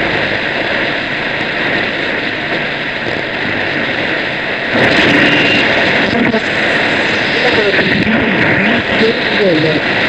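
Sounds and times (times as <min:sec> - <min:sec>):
radio static hiss: 0:00.0 - 0:10.0.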